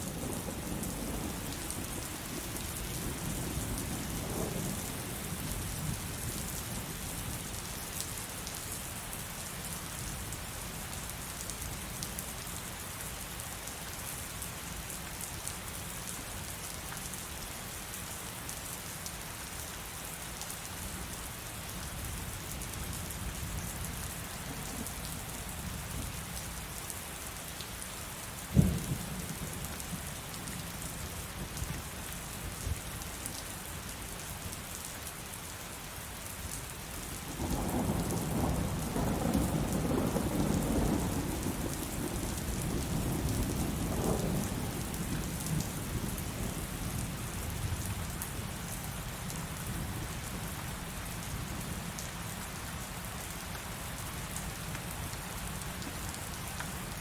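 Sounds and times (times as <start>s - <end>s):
rolling thunder rumble: 28.6s - 29.6s, 37.4s - 46.6s.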